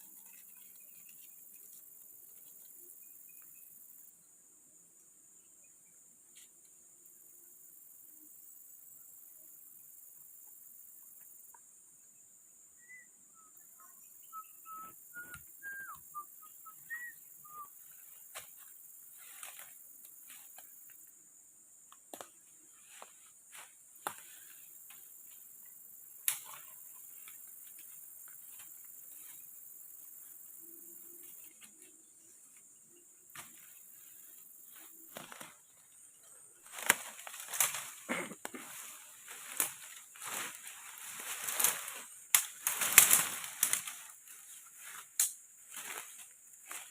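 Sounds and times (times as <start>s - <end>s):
high insect hum: 0.0s - 46.9s
bird chirps: 12.8s - 17.8s.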